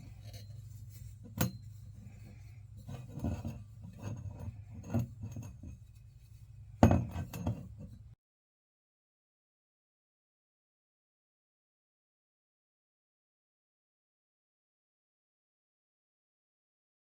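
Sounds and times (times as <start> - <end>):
metal parts clinking and scraping: 0.0 - 8.1
steady low hum: 0.0 - 8.2.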